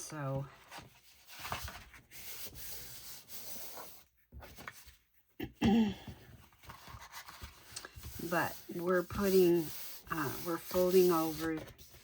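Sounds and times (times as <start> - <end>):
hand rubbing paper: 6.6 - 12.0.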